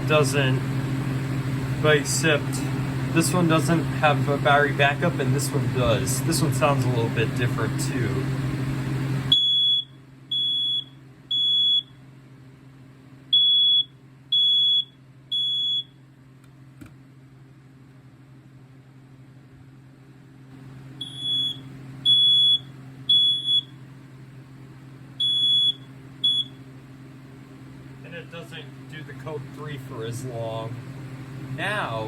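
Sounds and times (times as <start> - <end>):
smoke alarm beeping: 9.3 - 12.0, 13.3 - 16.0, 21.0 - 23.8, 25.2 - 26.6.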